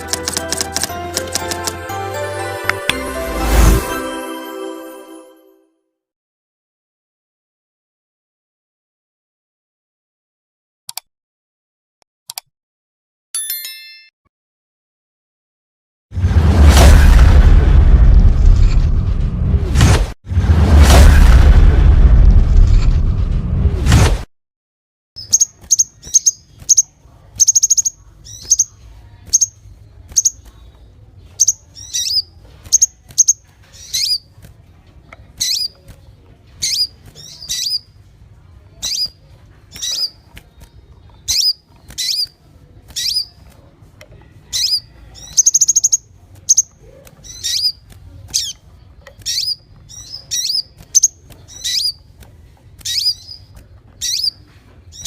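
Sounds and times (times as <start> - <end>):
high bird chirps: 25.2 - 30.5, 31.4 - 34.2, 44.6 - 47.8, 49.2 - 52.0, 52.9 - 55.0.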